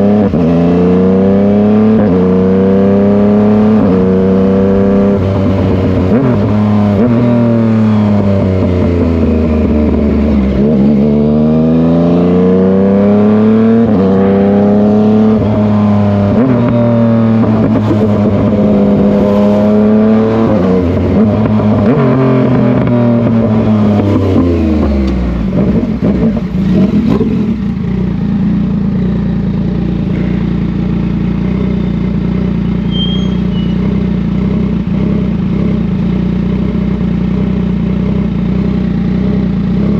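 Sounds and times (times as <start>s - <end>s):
motorcycle engine revving: 0.0s - 39.9s
motorcycle engine idling: 25.2s - 39.9s.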